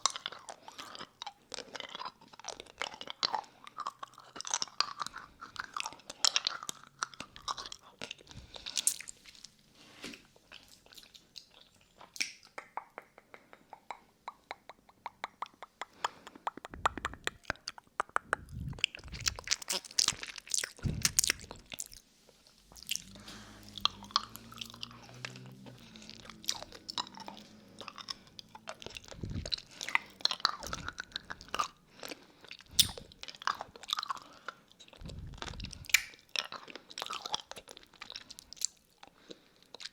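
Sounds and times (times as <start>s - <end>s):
lollipop being sucked and licked: 15.3s - 31.9s, 32.5s - 33.9s.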